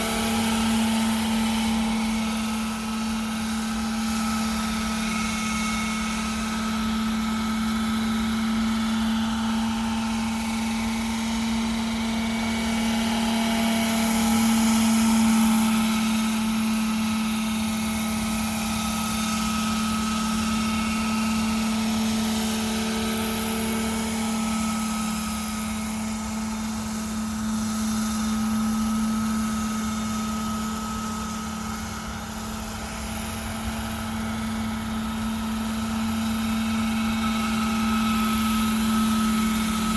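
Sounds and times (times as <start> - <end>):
model helicopter engine and rotors: 0.0 - 39.9.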